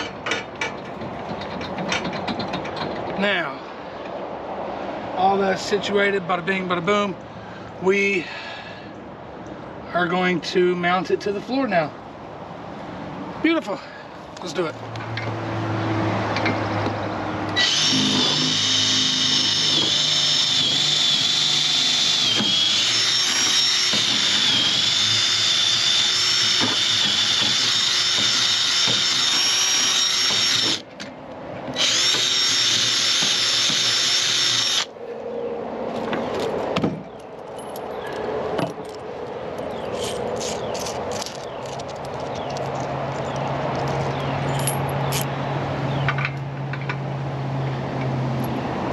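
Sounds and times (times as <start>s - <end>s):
power drill whining: 17.6s - 30.8s, 31.8s - 34.9s.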